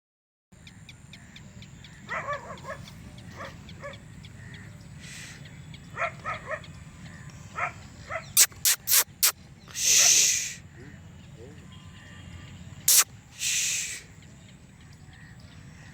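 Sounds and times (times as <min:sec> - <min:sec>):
short animal calls: 0:08.2 - 0:10.9, 0:12.8 - 0:14.1.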